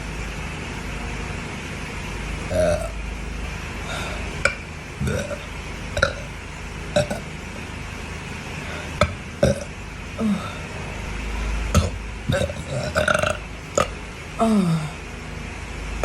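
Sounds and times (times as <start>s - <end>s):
person burping: 2.5s - 3.0s, 3.9s - 6.3s, 7.0s - 7.2s, 9.0s - 10.6s, 11.8s - 15.0s.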